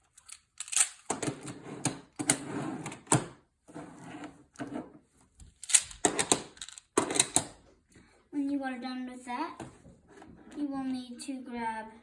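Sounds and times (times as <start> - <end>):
plastic magnetic tiles clacking: 0.2 - 1.1, 5.6 - 7.5.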